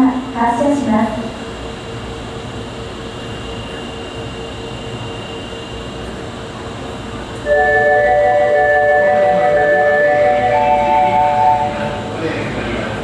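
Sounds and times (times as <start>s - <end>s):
subway platform ambience: 0.0s - 13.0s
electronic chime melody: 7.5s - 12.0s.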